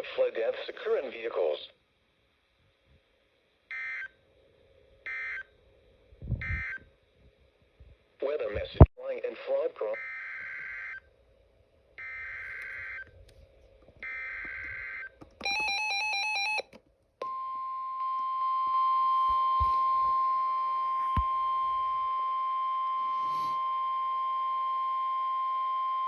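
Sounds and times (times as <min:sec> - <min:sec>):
steady warning alarm tone: 0:10.0 - 0:11.1, 0:12.0 - 0:13.1, 0:14.0 - 0:17.6.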